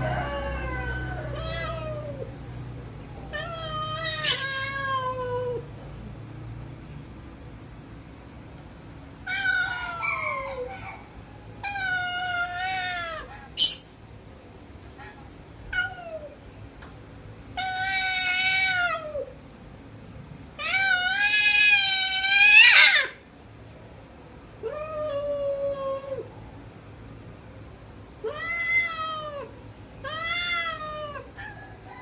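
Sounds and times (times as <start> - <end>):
cat yowling: 0.2 - 2.4, 3.1 - 5.7, 9.2 - 13.9, 15.0 - 16.4, 17.6 - 19.4, 20.6 - 23.2, 24.6 - 26.3, 28.2 - 31.6.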